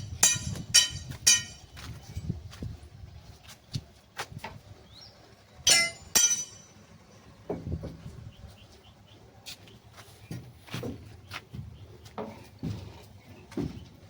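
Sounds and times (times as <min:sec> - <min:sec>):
metallic clangs: 0:00.0 - 0:01.9, 0:05.7 - 0:06.9.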